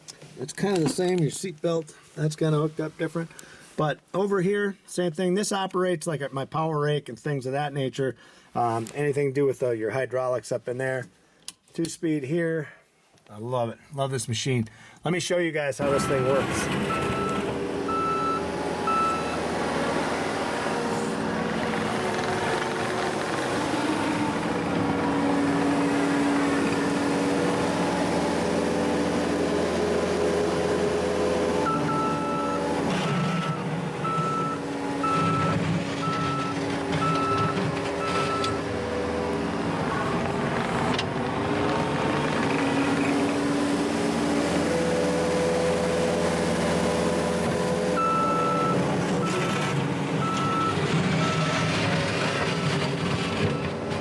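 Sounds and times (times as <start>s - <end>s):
reverse alarm beeping: 15.8s - 19.4s, 31.7s - 32.7s, 33.3s - 38.6s, 48.0s - 49.4s, 50.2s - 51.7s
diesel engine running: 15.8s - 54.0s.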